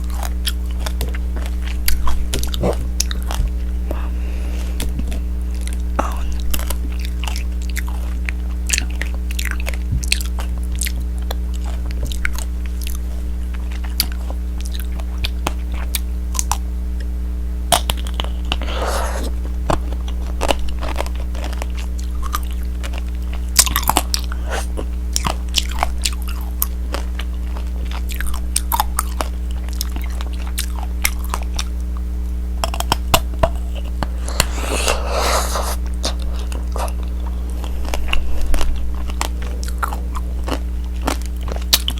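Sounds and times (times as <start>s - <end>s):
steady low hum: 0.0s - 41.9s
candy shell crunching: 32.6s - 41.9s.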